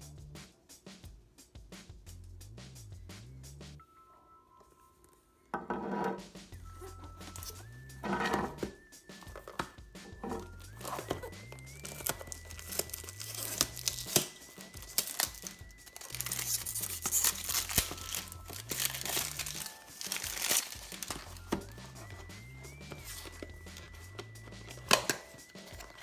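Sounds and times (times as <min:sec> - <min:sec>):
background music with bass: 0:00.0 - 0:03.8, 0:06.2 - 0:26.0
packaging crinkling and rustling: 0:10.2 - 0:26.0
packaging tearing: 0:10.7 - 0:22.3.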